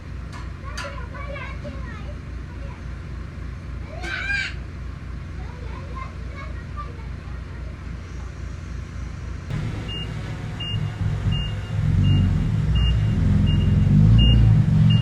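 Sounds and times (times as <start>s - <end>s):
diesel machine engine rumbling: 4.6s - 15.0s
reversing alarm beeping: 9.5s - 15.0s.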